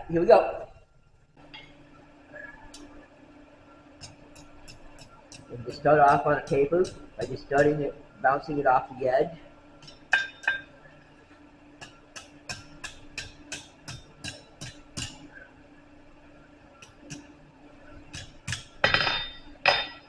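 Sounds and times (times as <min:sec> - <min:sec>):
hammer striking steel on anvil: 0:04.0 - 0:07.8, 0:09.8 - 0:10.7, 0:11.8 - 0:15.3, 0:18.2 - 0:20.0.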